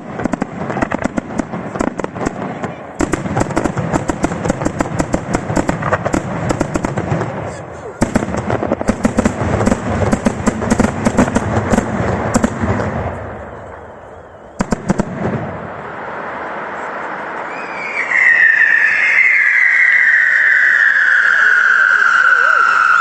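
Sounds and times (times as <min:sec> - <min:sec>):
fireworks bangs: 0:00.0 - 0:23.0
firework whistle sliding down: 0:16.7 - 0:23.0.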